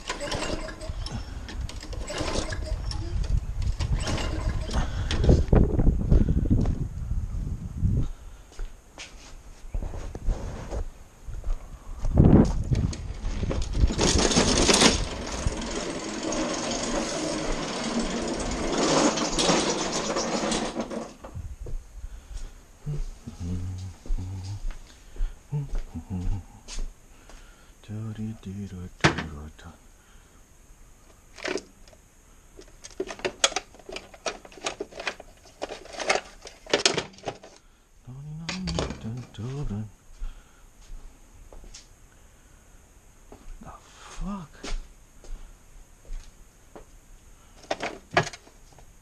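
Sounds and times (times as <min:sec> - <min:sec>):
mower engine cranking: 0:00.0 - 0:05.5, 0:12.8 - 0:21.3, 0:31.3 - 0:32.0, 0:32.7 - 0:37.6.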